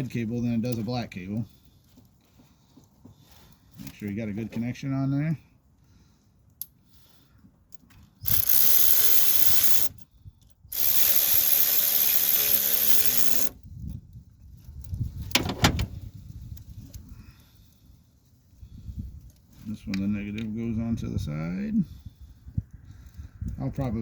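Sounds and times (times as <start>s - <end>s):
sharp metal clicks: 7.7s - 10.0s, 10.7s - 13.6s
cordless power tool running: 8.3s - 9.9s, 10.7s - 13.6s.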